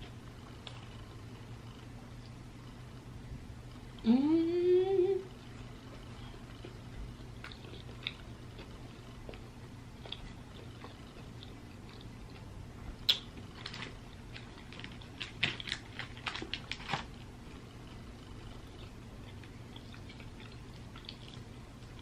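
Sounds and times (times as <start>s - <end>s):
wet chewing of fried chicken: 5.4s - 22.0s.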